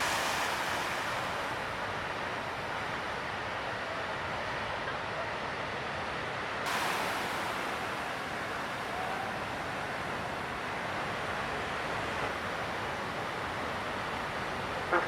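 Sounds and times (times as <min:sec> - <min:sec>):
wind on microphone: 0:00.0 - 0:03.3
surf breaking: 0:00.0 - 0:04.2, 0:06.7 - 0:15.0.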